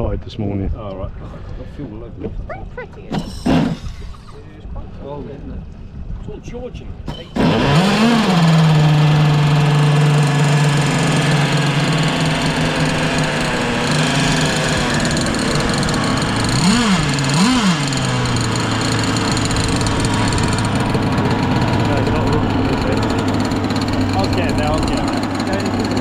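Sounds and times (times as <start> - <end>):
boat engine idling and revving: 2.4 - 6.0, 7.1 - 26.0.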